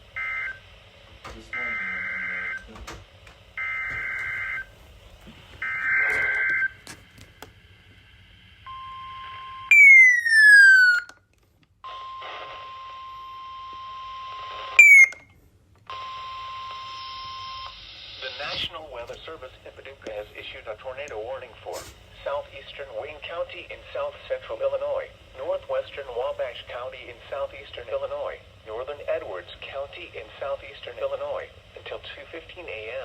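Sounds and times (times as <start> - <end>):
steady warning alarm tone: 1.4 - 2.8, 3.6 - 4.8, 5.6 - 6.8, 8.6 - 11.1, 11.9 - 15.3
descending electronic sweeps: 9.7 - 11.1.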